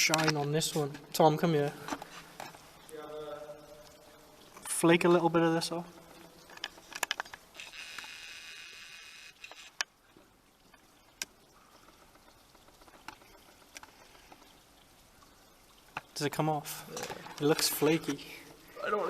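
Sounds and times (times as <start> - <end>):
faint clicks: 6.0 - 16.2.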